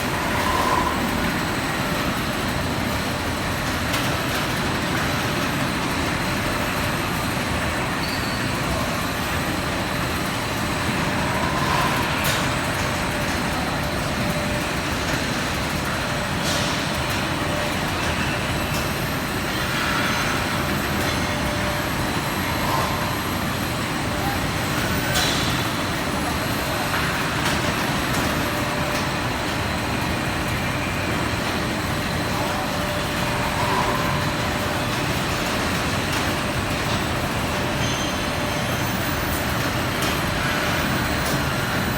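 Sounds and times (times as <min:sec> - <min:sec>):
industrial machinery running: 0:00.0 - 0:41.9.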